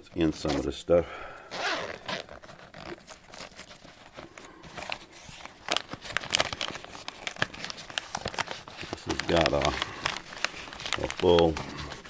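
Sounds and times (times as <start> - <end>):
packaging rustling and crinkling: 1.5 - 12.0
sharp crackles: 6.1 - 12.0.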